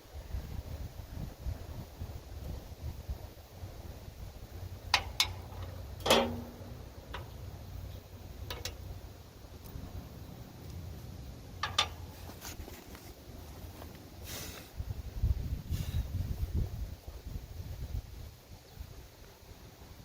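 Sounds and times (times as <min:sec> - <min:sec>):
low steady rumble: 0:00.0 - 0:20.0
metallic tool clicks and clanks: 0:11.6 - 0:12.1.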